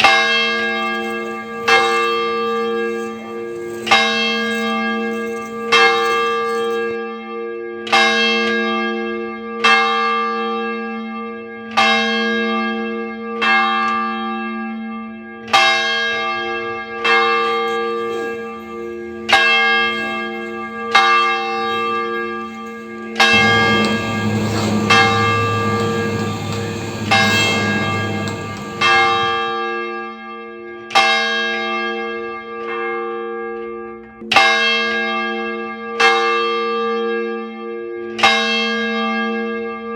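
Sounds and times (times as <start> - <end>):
church bell tolling: 0.0 - 14.8, 15.5 - 30.0, 31.0 - 37.4
steady low hum: 17.3 - 29.5
rushing noise: 17.3 - 29.6.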